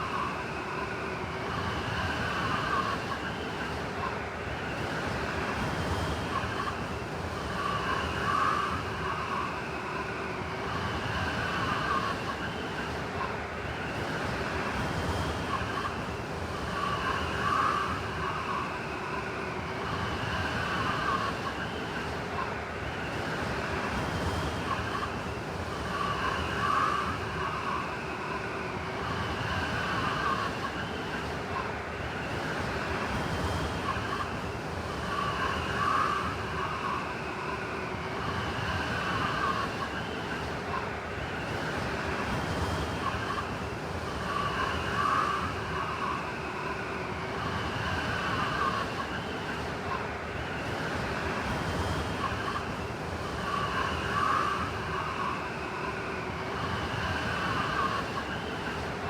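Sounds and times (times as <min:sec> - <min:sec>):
blizzard wind howling and whistling: 0:00.0 - 0:59.0.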